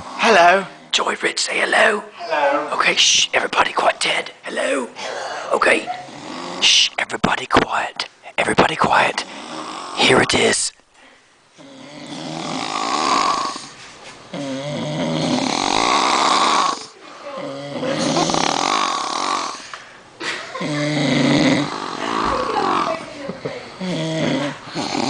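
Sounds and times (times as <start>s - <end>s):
person snoring heavily: 5.9s - 6.9s, 9.2s - 10.2s, 11.6s - 19.7s, 20.6s - 23.1s, 23.8s - 25.0s.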